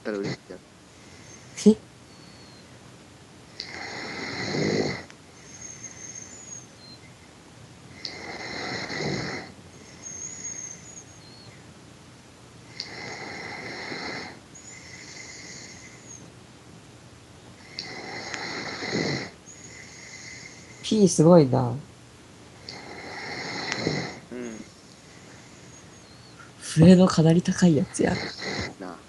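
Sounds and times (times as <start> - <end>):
person snoring: 3.6 - 5.1, 8.0 - 10.2, 12.8 - 16.2, 17.6 - 20.8, 22.7 - 25.4, 28.1 - 28.9
high-pitched whistle on out-breath: 5.4 - 7.0, 9.9 - 11.5.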